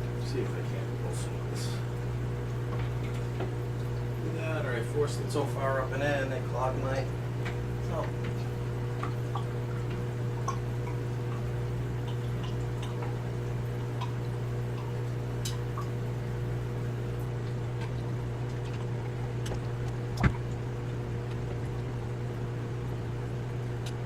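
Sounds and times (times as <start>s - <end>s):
steady low hum: 0.0s - 24.0s
water trickling: 2.0s - 5.8s, 6.4s - 24.0s
small ticks: 23.7s - 24.0s.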